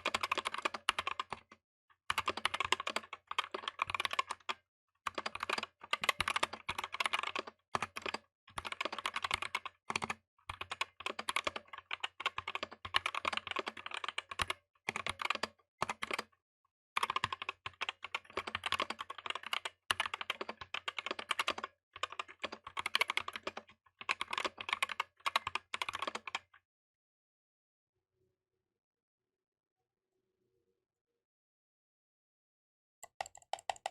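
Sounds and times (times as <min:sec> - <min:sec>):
mechanical keyboard typing: 0:00.0 - 0:16.3, 0:17.0 - 0:26.5, 0:33.0 - 0:33.9.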